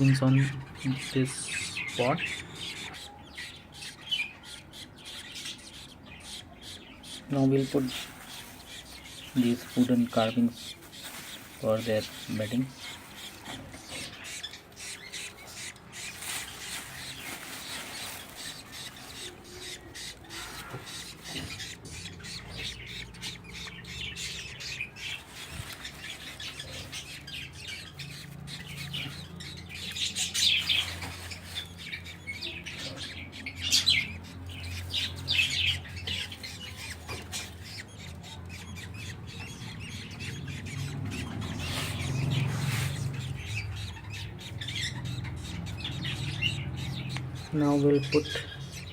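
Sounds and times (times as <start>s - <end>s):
bird chicks squawking and chirping: 0.0s - 48.9s
wood shavings rustling: 7.3s - 32.2s, 40.8s - 44.5s.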